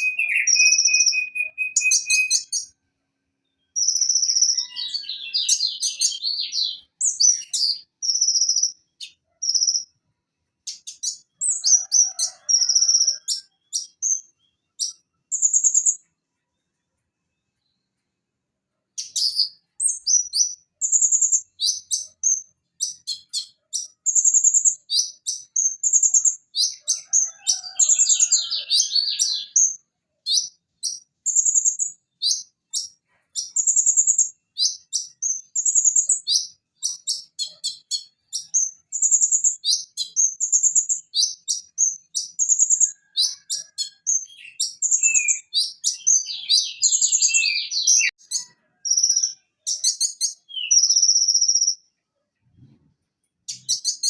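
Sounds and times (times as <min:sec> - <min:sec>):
sunbird singing: 0:00.0 - 0:02.7, 0:03.4 - 0:09.9, 0:19.0 - 0:51.8.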